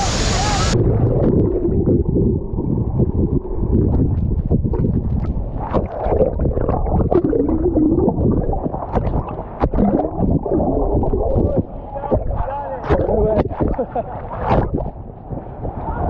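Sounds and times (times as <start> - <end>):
underwater waterfall rumble: 0.0 - 16.0
bubble clicks and pops: 1.0 - 13.8.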